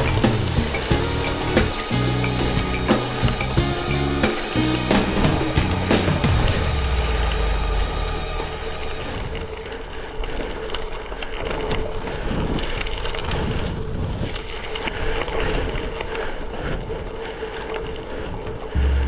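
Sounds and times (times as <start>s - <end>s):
steady hum: 18.8s - 19.0s.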